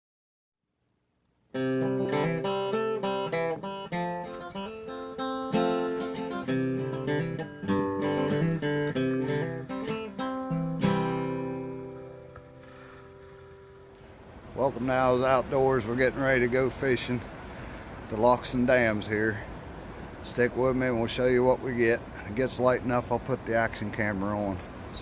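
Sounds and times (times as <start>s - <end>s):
acoustic guitar picking: 1.5s - 15.4s.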